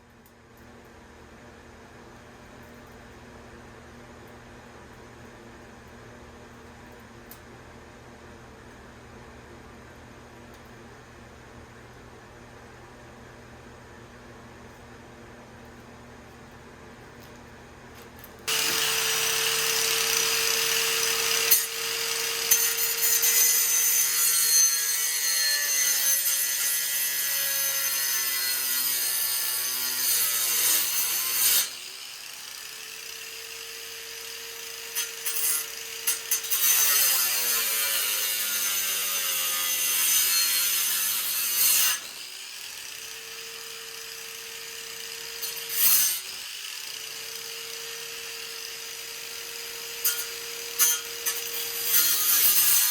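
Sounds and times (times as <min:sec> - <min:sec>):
electric cutting tool slicing metal: 0:18.5 - 0:52.9.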